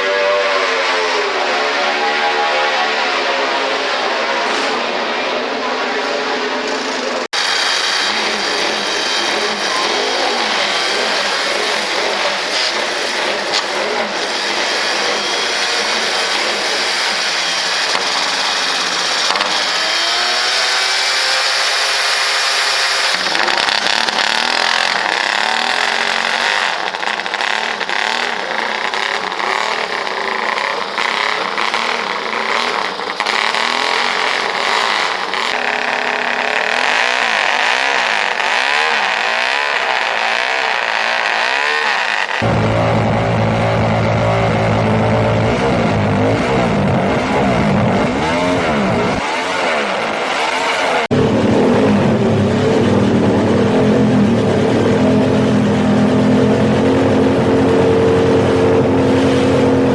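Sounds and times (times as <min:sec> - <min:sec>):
motorcycle engines revving: 0:00.0 - 0:59.9.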